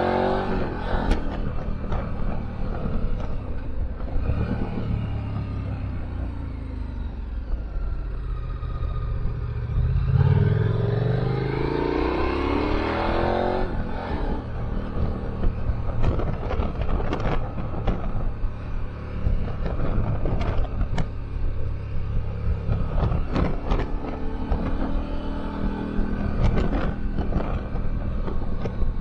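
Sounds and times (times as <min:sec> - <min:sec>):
motorcycle engine accelerating: 0:00.0 - 0:29.0
wind noise on microphone: 0:08.8 - 0:29.0.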